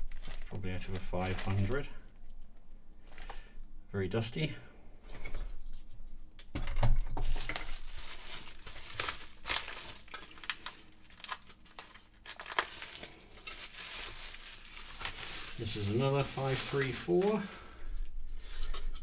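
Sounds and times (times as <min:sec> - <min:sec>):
plastic bag crinkling: 0:00.0 - 0:02.1, 0:03.0 - 0:03.4, 0:07.2 - 0:18.6.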